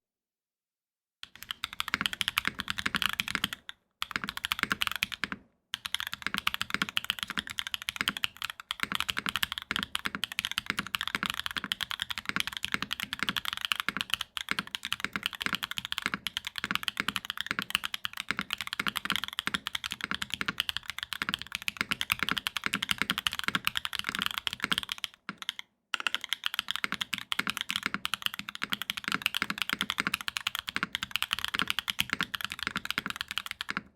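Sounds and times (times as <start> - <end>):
fast mechanical keyboard typing: 1.2 - 33.9.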